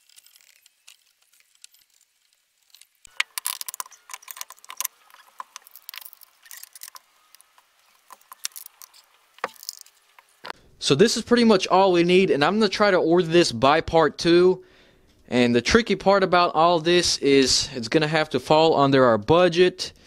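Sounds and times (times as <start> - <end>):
small objects clicking and rustling: 0.0 - 10.6.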